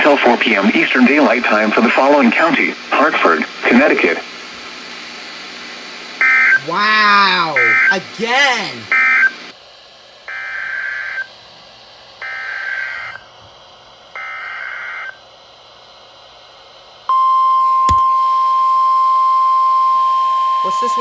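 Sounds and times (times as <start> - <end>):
high warning alarm tone: 6.2 - 9.3, 12.2 - 13.2, 17.1 - 21.0
sharp click: 17.9 - 18.1.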